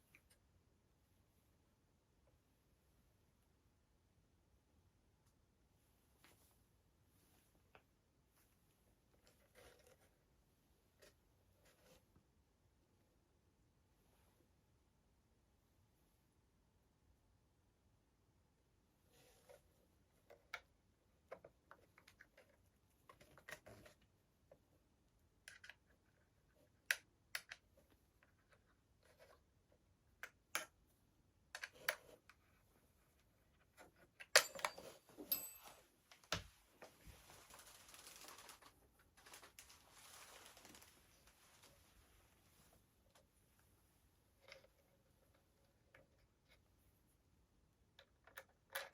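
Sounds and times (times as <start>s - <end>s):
rustling: 34.8s - 43.3s.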